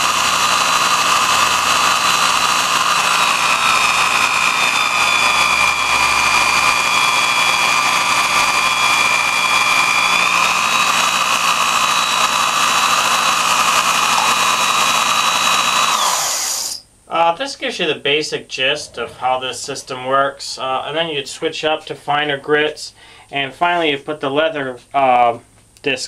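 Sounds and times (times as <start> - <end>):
power tool grinding disc whine: 0.0 - 16.8.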